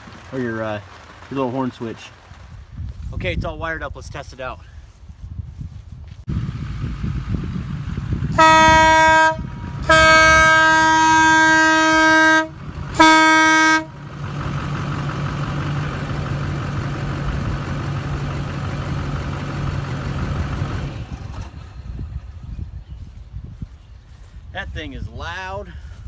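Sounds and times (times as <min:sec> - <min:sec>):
train air horn blasts: 0:08.3 - 0:14.0.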